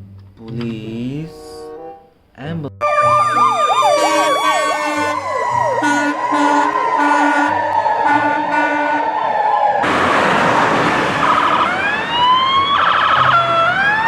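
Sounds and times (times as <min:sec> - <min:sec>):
wavering emergency siren: 0:02.8 - 0:14.0
rush of noise: 0:09.8 - 0:12.3.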